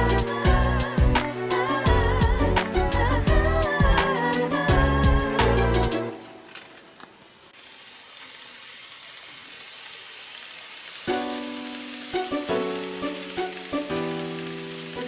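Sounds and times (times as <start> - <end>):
music with sustained keyboard notes: 0.0 - 6.4, 11.1 - 15.0
steady high hiss: 0.0 - 15.0.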